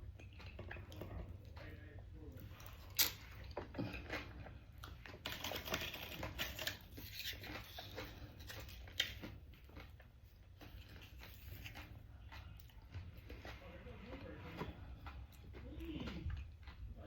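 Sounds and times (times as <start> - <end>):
person chewing crunchy food: 0.0 - 17.0.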